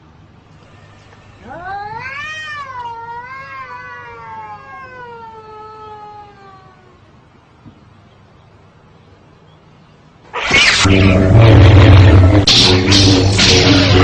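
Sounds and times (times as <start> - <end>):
cat yowling: 1.4 - 7.1.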